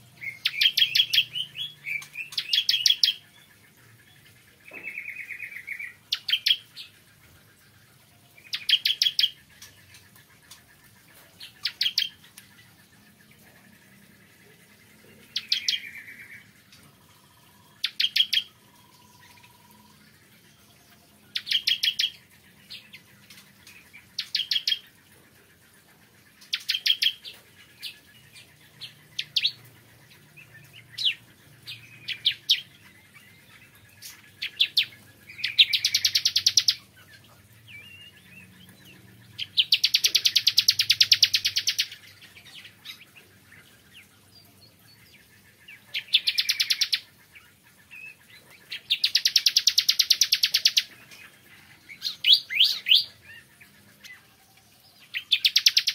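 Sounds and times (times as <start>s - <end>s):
bird chipping song: 0.0s - 55.9s.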